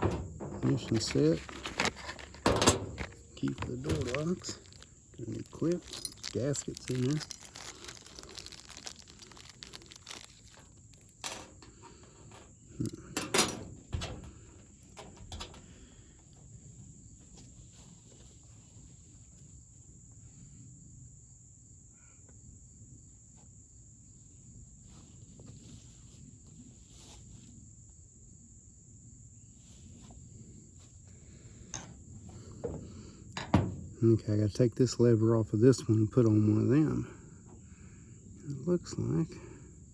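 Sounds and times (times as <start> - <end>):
small parts clicking and knocking: 0.0 - 15.6
crickets chirring: 0.0 - 39.9.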